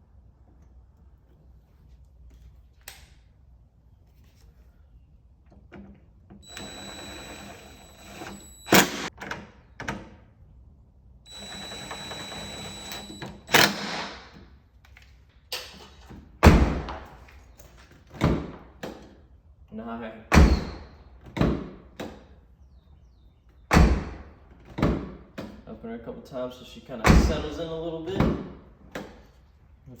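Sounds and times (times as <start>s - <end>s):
cordless power tool running: 6.4s - 9.1s, 11.3s - 13.7s.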